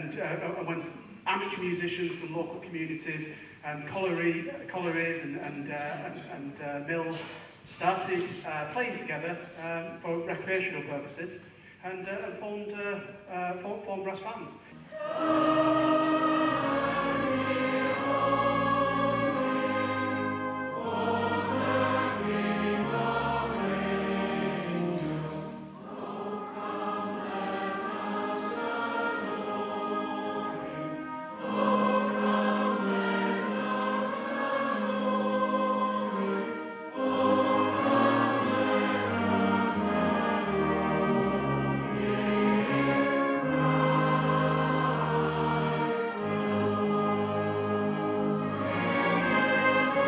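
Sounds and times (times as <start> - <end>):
brass band playing a carol: 14.7 - 50.0.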